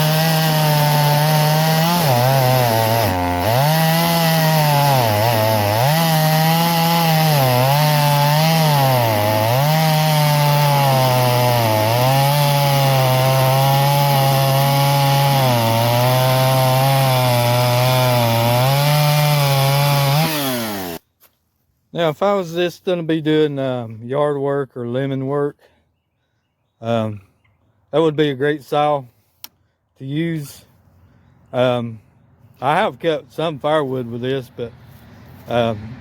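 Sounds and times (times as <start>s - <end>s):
chainsaw cutting wood: 0.0s - 21.0s.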